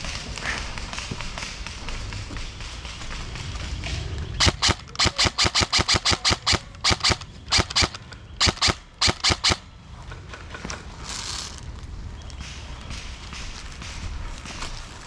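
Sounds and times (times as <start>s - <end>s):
airsoft gun shots: 4.4s - 9.7s.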